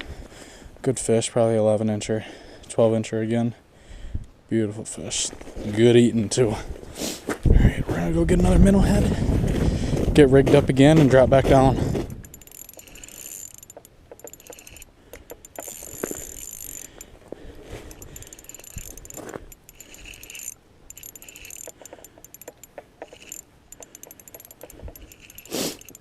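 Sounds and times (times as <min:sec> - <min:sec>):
fishing reel clicks and rattles: 0:12.1 - 0:17.2, 0:17.8 - 0:26.0.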